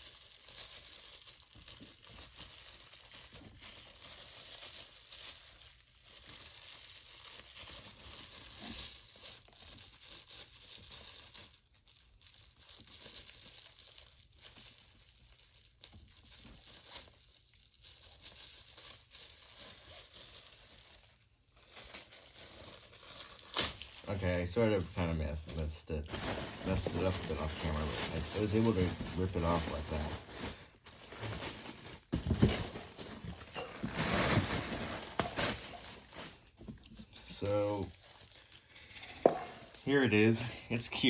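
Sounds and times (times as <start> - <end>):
packaging rustling and crinkling: 0.0 - 41.0.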